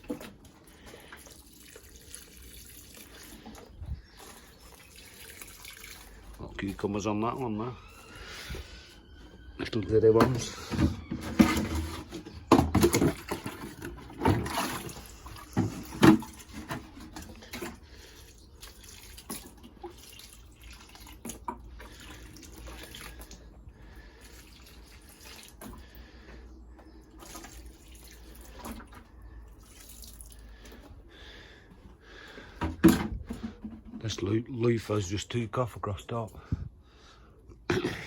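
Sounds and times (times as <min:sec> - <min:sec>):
water pouring: 0:00.0 - 0:07.9, 0:12.8 - 0:26.2, 0:27.1 - 0:30.8.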